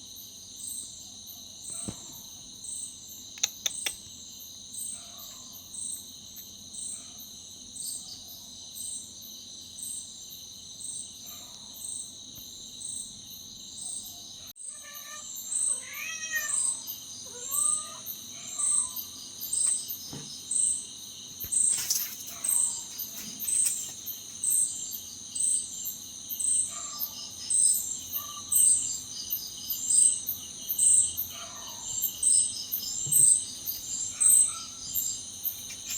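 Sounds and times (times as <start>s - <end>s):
insects chirping: 0.0s - 35.9s
cat meowing: 14.6s - 18.1s.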